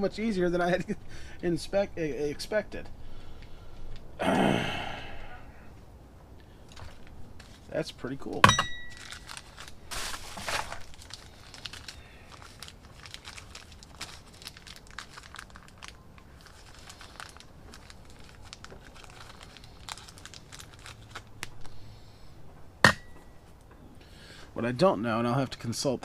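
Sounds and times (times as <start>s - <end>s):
crinkling and rustling: 6.7s - 21.8s.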